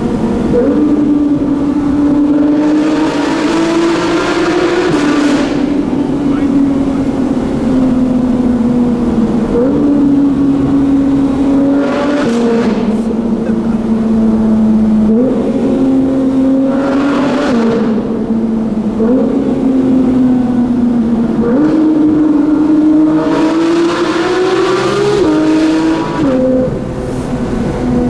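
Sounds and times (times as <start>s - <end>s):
sports car engine changing gears: 0.0s - 28.0s.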